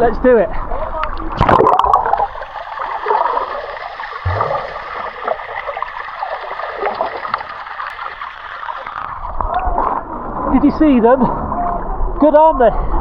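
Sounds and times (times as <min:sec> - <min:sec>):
water splash: 0:00.0 - 0:10.0
underwater bubbling and crackling: 0:00.0 - 0:10.6
low thump: 0:04.2 - 0:06.0.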